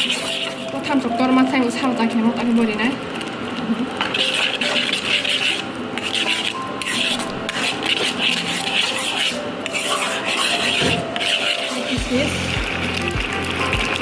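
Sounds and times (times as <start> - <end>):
faint background music: 0.0 - 14.0
rasping scrape: 4.2 - 12.0.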